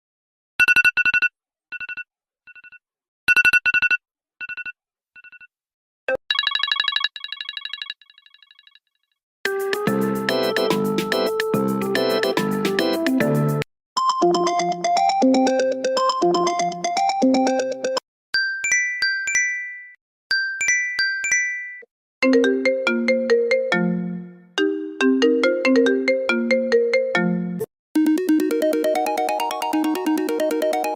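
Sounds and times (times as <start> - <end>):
electronic alarm melody: 9.5 - 13.6.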